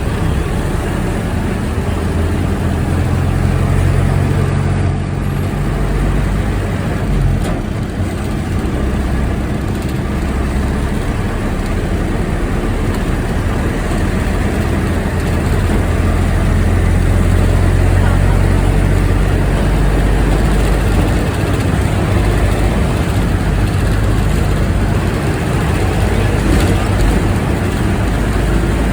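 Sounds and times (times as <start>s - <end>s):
bus engine droning: 0.0s - 28.9s.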